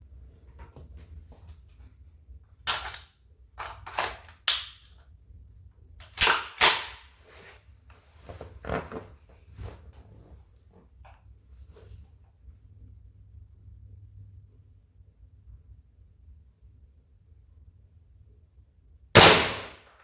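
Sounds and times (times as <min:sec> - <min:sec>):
airsoft rifle shots: 0:06.2 - 0:07.0, 0:19.2 - 0:20.0.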